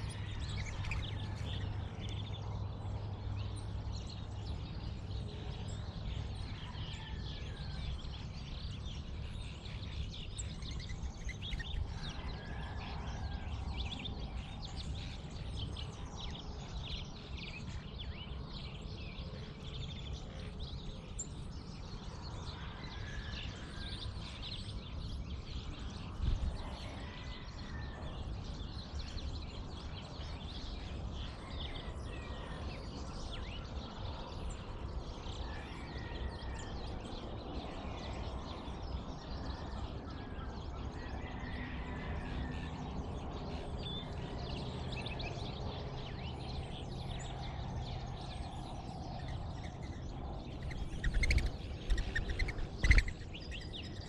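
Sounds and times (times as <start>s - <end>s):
steady low rumble: 0.0s - 6.6s, 42.8s - 54.0s
birds chirping and calling: 0.0s - 7.2s, 8.9s - 18.8s, 22.9s - 54.0s.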